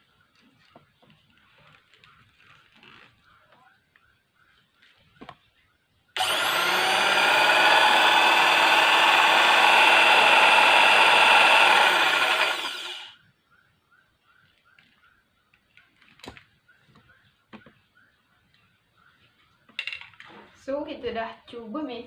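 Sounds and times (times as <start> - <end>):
electric cloth cutter whining: 6.2 - 13.2.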